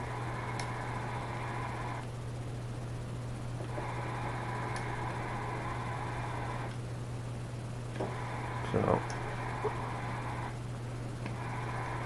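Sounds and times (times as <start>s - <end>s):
radio static hiss: 0.0s - 2.0s, 3.7s - 6.7s, 8.0s - 10.6s, 11.3s - 12.0s
low electrical hum: 0.0s - 12.0s.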